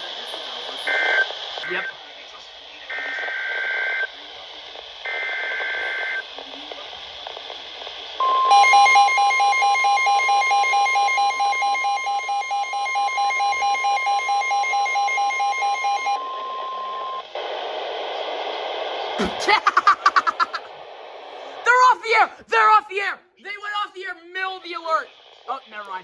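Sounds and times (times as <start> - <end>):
steady warning alarm tone: 8.2 - 17.2
warbling two-tone data code: 8.2 - 17.2.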